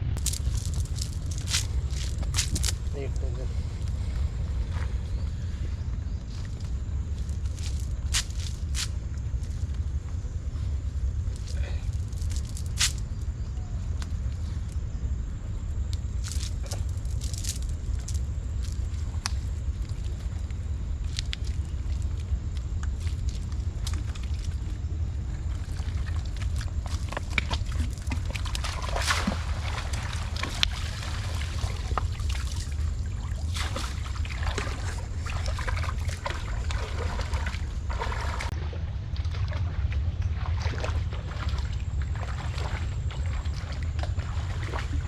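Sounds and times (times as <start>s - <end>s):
water sloshing and splashing: 0.0s - 13.3s, 15.5s - 45.0s
steady low rumble: 0.0s - 45.0s.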